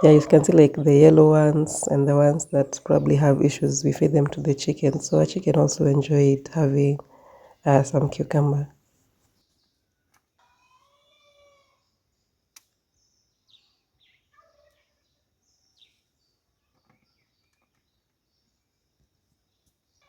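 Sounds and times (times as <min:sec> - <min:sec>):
click: 0:12.5 - 0:12.7.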